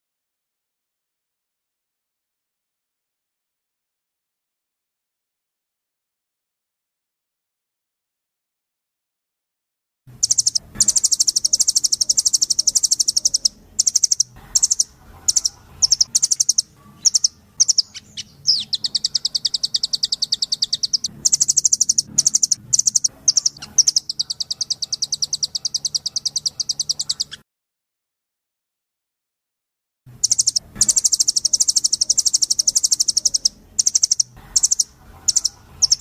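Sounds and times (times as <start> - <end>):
bird singing rapid trills: 10.2 - 27.4, 30.2 - 36.0.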